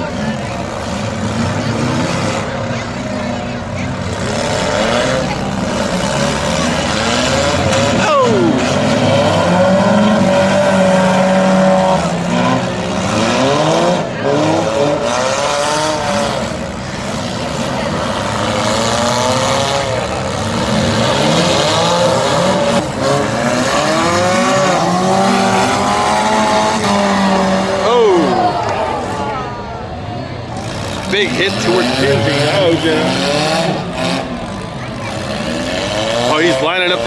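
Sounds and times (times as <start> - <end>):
car engines revving: 0.0 - 37.0.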